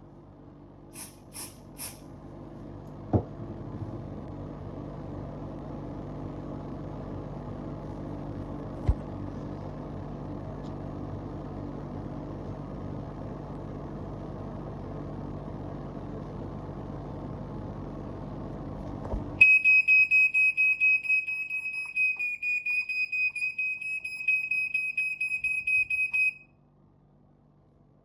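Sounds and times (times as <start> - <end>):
smoke detector alarm beeping: 19.4 - 26.4.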